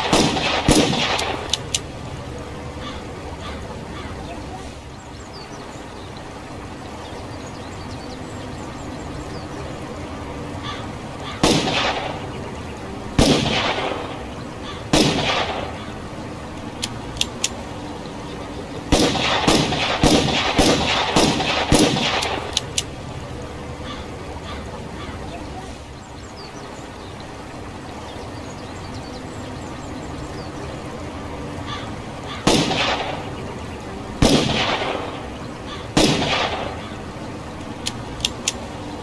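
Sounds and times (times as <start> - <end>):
revolver gunshots: 0.0 - 1.8, 11.4 - 12.4, 13.2 - 15.9, 18.9 - 22.6, 32.4 - 33.3, 34.2 - 36.9
light gun clicks: 37.6 - 38.6.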